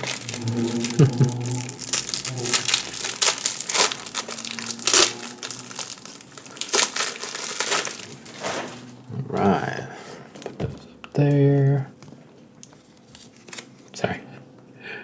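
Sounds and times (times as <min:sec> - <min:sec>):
plastic packaging crinkling: 0:00.0 - 0:09.0, 0:10.0 - 0:10.9, 0:11.5 - 0:13.9.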